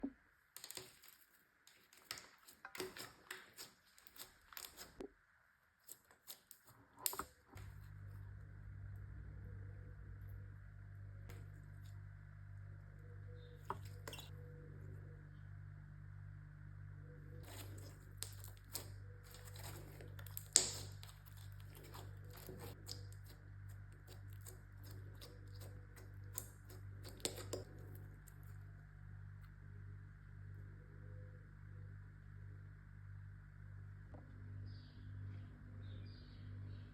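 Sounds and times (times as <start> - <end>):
steady low hum: 6.8 - 36.9
slime crackling and popping: 17.4 - 28.5.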